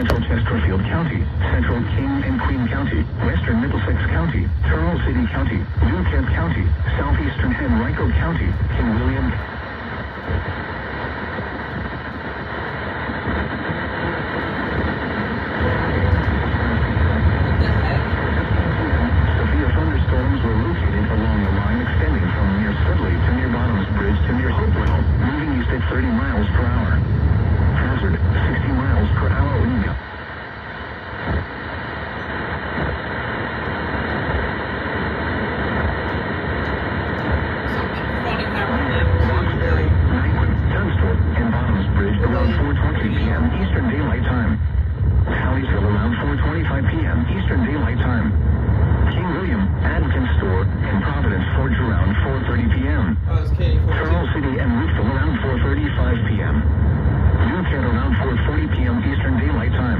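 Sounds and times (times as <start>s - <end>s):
radio static hiss and rumble: 0.0s - 59.9s.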